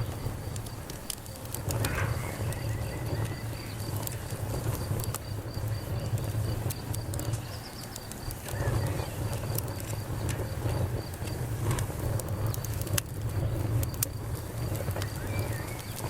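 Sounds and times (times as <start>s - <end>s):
crickets chirping: 0.0s - 11.6s
campfire crackling and popping: 0.0s - 16.0s.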